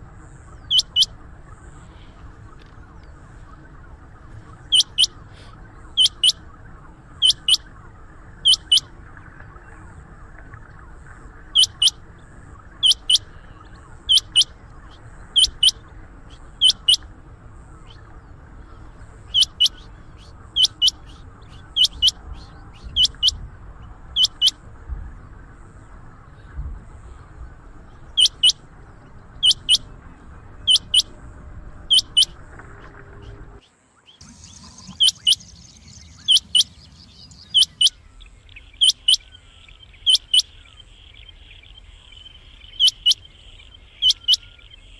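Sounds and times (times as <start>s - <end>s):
quail calling high double notes: 6.0s - 6.4s, 8.5s - 8.9s, 34.4s - 38.0s, 38.8s - 39.2s.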